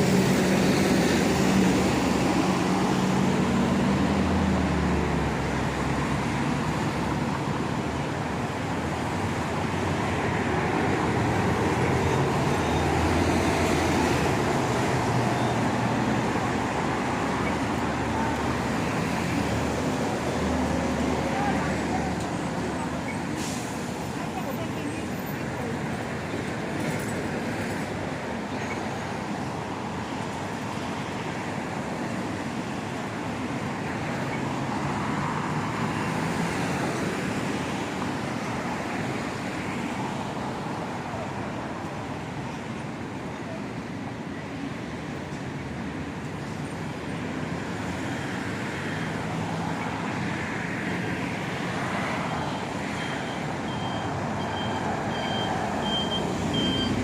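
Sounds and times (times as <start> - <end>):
cars passing: 0.0 - 57.0
faint high beep: 52.4 - 57.0.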